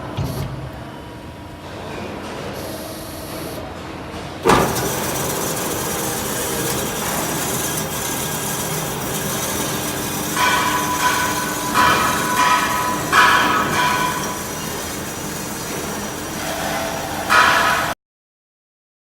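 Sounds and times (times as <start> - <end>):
band saw running: 4.4 - 18.0.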